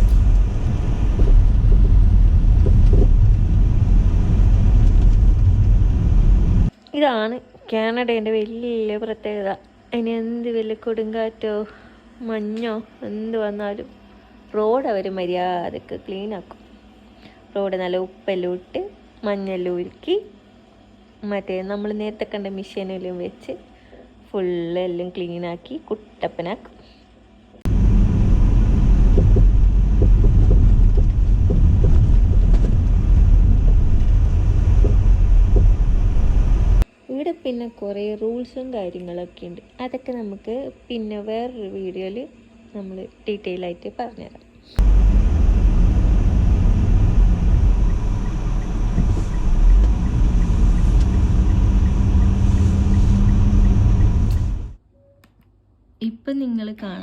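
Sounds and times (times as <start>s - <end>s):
low road rumble: 0.0s - 6.7s, 27.7s - 36.8s, 44.8s - 54.8s
wind noise: 0.0s - 6.7s, 27.7s - 36.8s, 44.8s - 54.8s.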